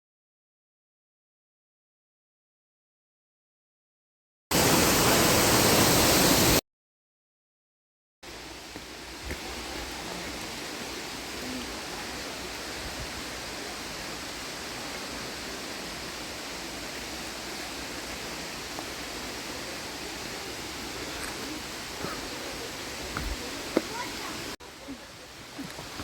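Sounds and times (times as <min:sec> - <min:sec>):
waterfall rushing: 0:04.5 - 0:06.6, 0:08.3 - 0:26.0.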